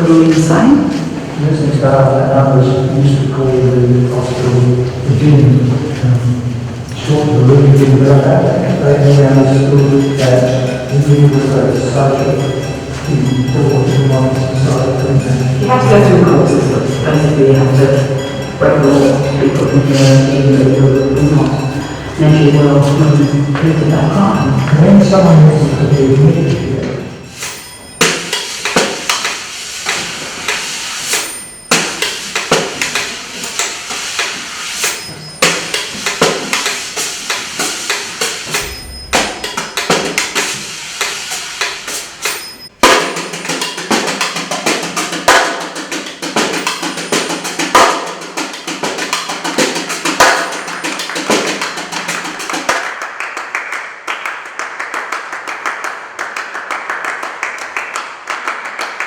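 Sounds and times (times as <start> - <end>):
percussion music: 0.0 - 59.0
low steady tone: 38.5 - 40.7.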